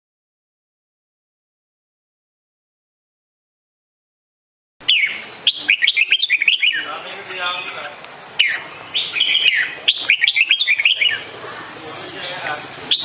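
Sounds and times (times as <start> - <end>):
bird singing sliding chirps: 4.8 - 11.4.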